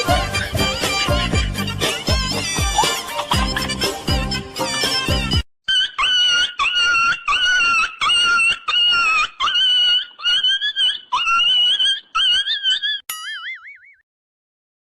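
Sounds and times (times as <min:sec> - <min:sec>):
comic high-pitched squeals: 0:05.7 - 0:14.0.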